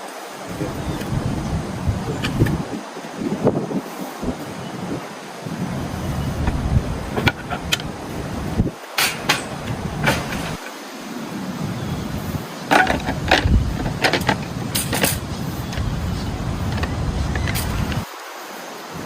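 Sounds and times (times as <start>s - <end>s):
gusty wind buffeting microphone: 0.0s - 18.1s
sharp clicks and knocks: 12.7s - 15.9s.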